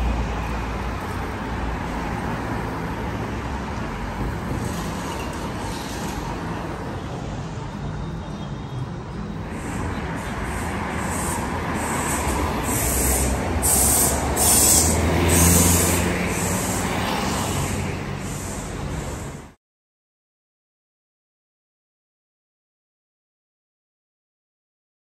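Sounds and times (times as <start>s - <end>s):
vehicle rumble: 0.0s - 19.6s
rhythmic hiss: 9.5s - 19.5s.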